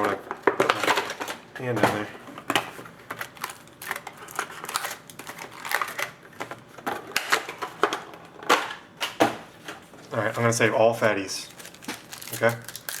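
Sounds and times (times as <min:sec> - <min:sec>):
foil wrappers crinkling: 0:00.3 - 0:06.5, 0:10.1 - 0:13.0.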